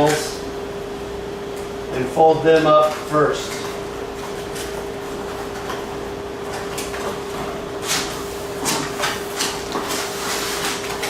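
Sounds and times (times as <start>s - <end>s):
cardboard scraping and rustling: 6.9s - 11.0s.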